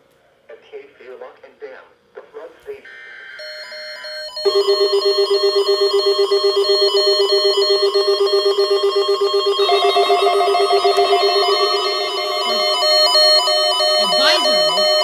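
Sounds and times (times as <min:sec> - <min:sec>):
second alarm at different pitch: 0:02.9 - 0:15.0
electronic alarms beeping rapidly: 0:03.4 - 0:15.0.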